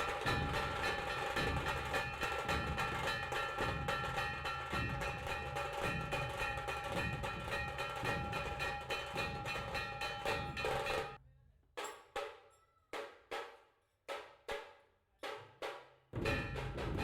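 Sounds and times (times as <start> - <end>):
music with steady beat: 0.0 - 11.2
ringing drum hits: 0.0 - 11.2, 16.2 - 17.0.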